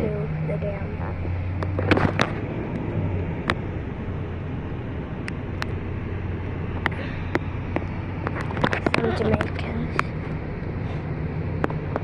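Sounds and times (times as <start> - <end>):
car road and engine hum: 0.0 - 12.0.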